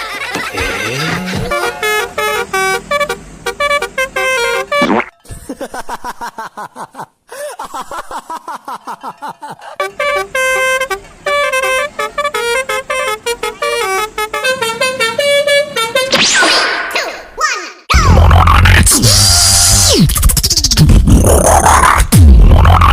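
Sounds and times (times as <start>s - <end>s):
multi-tone bus horn tune: 0.4s - 5.0s, 9.6s - 16.2s.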